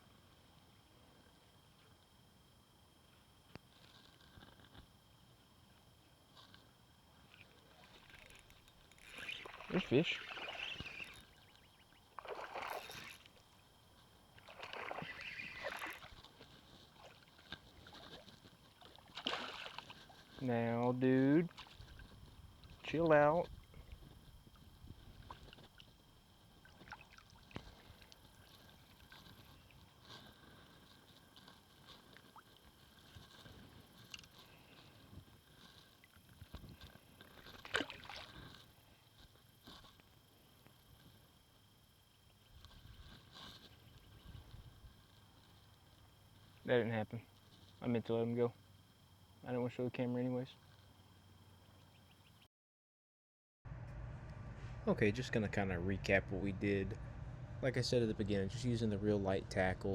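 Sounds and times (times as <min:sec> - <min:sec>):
water sloshing around legs: 0:07.3 - 0:13.7, 0:14.3 - 0:20.4, 0:21.5 - 0:22.9, 0:24.0 - 0:34.3, 0:35.8 - 0:38.6.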